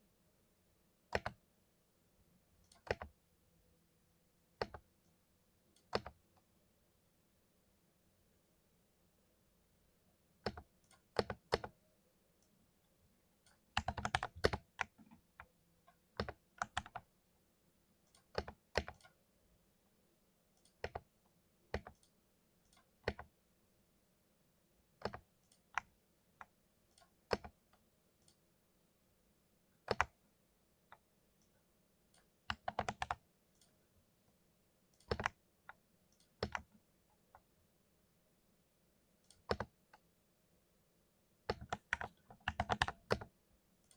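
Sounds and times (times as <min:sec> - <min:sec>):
small keyboard keystrokes: 0:01.1 - 0:01.4, 0:02.6 - 0:03.2, 0:04.6 - 0:04.9, 0:05.8 - 0:06.5, 0:10.4 - 0:11.8, 0:13.4 - 0:15.5, 0:16.2 - 0:17.1, 0:18.1 - 0:19.2, 0:20.6 - 0:21.1, 0:21.7 - 0:23.4, 0:25.0 - 0:28.4, 0:29.8 - 0:30.2, 0:32.1 - 0:33.7, 0:34.9 - 0:36.8, 0:39.2 - 0:40.1, 0:41.5 - 0:43.9.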